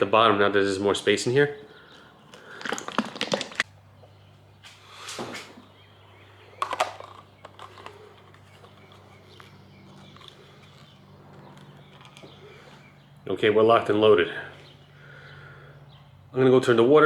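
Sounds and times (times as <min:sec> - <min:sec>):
steady low hum: 0:00.0 - 0:17.0
plastic clatter: 0:02.3 - 0:03.6, 0:06.6 - 0:12.4
plastic parts rustling: 0:02.3 - 0:03.6, 0:06.6 - 0:12.8.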